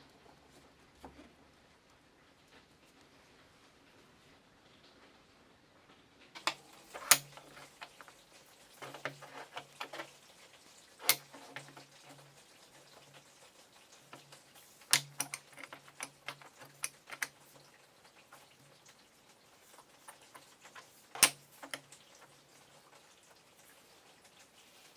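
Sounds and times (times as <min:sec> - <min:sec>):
hard clicks and knocks: 0:06.4 - 0:08.1, 0:14.9 - 0:17.4.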